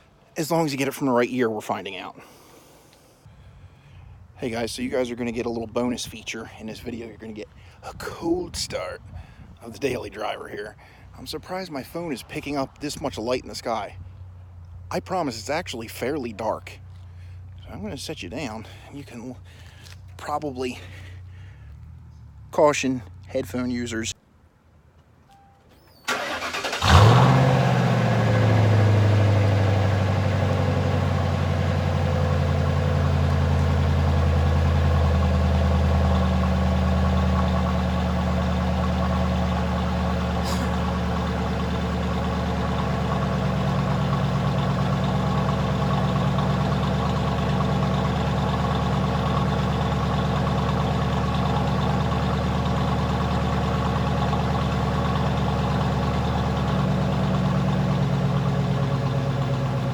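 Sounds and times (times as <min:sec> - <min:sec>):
exhaust burble: 0:02.1 - 0:11.5, 0:12.2 - 0:23.7, 0:26.1 - 0:59.9
car engine starting and idling: 0:12.3 - 0:24.1, 0:25.7 - 0:59.9.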